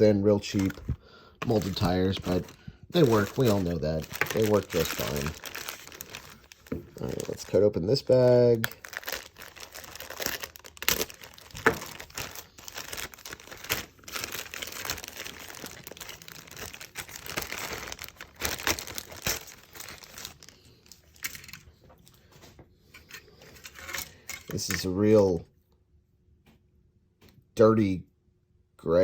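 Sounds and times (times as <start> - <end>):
plastic bag crinkling: 0.0 - 22.2.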